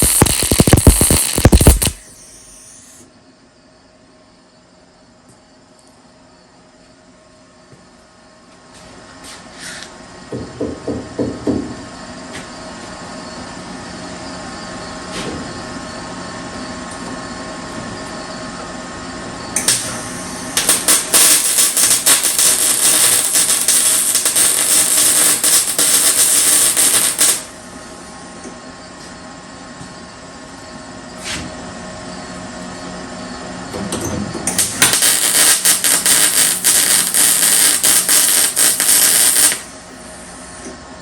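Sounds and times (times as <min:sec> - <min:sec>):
welder arc crackling: 0:00.0 - 0:03.0, 0:19.6 - 0:27.5, 0:34.5 - 0:39.7.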